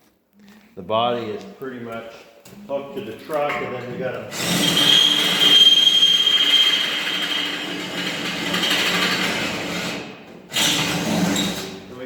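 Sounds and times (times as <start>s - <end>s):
electric drill boring into steel: 4.3s - 11.3s.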